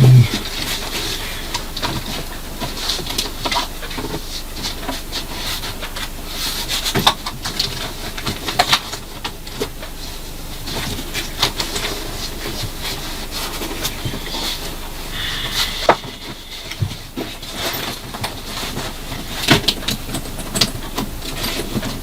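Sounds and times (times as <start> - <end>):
gear clicks and knocks: 15.9 - 22.0.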